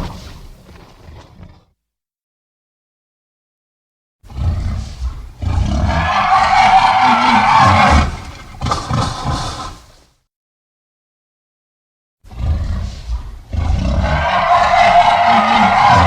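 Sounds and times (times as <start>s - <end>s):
monster roar: 4.3s - 9.8s, 12.3s - 16.0s.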